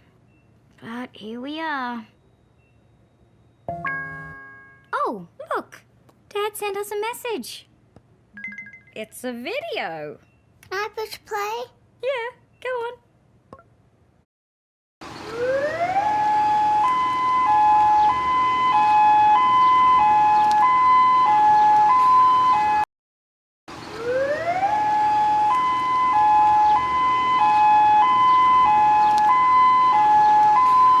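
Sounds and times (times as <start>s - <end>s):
two-tone alert siren: 15.3s - 22.9s, 24.0s - 31.0s.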